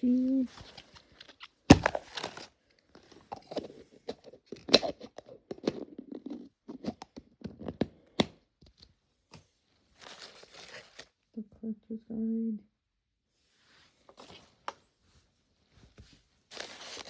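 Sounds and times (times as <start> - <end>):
plastic clicking and crinkling: 0.6 - 11.1.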